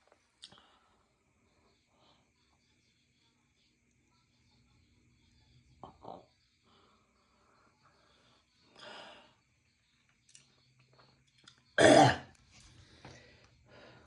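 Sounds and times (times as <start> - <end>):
person clearing throat: 11.8 - 12.3
person coughing: 11.8 - 12.3.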